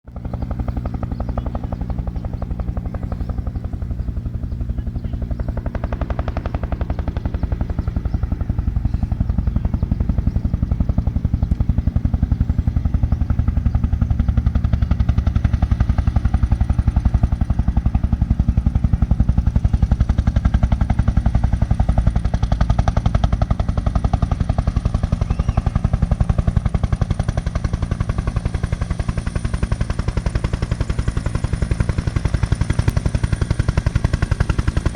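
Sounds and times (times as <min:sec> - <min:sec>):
low engine drone: 0:00.1 - 0:21.7
helicopter rotor chopping: 0:00.1 - 0:34.9.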